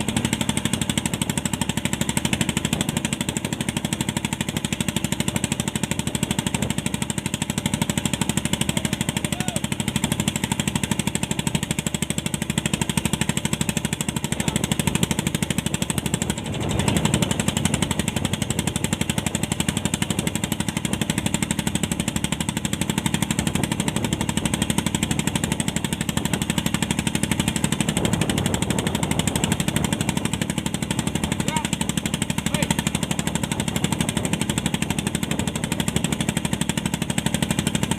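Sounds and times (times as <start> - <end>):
boat engine chugging: 0.0 - 37.9.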